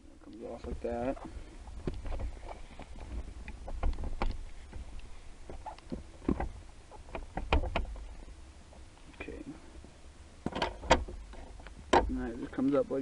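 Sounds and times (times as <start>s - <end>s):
car parts clicking and rattling: 1.8s - 8.2s, 10.4s - 12.8s.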